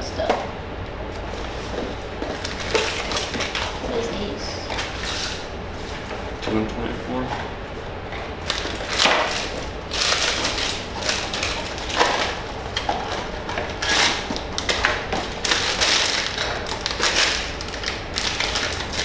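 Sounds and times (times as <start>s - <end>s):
foil bag crackling: 1.4s - 4.0s, 8.4s - 19.0s.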